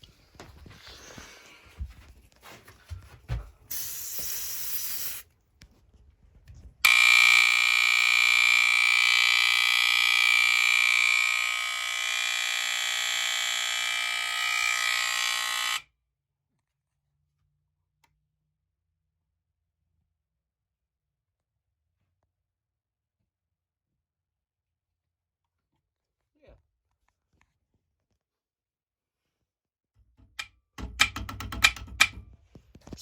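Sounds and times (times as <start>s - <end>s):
aerosol spray hiss: 3.7s - 5.3s
smoke alarm high-pitched tone: 6.8s - 15.8s.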